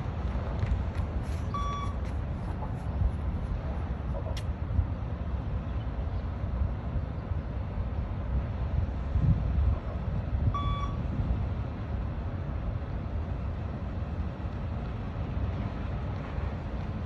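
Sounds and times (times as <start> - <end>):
steady low rumbling noise: 0.0 - 17.0
short electronic beep: 1.5 - 2.0, 10.6 - 11.0.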